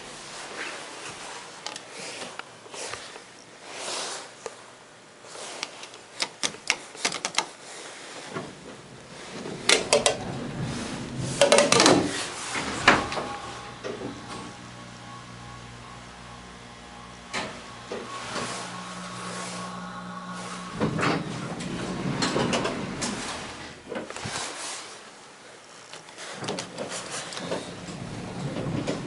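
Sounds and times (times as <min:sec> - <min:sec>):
clunks and rattles: 0:08.3 - 0:16.0, 0:20.6 - 0:24.4, 0:26.4 - 0:29.0
low hum: 0:08.5 - 0:24.4.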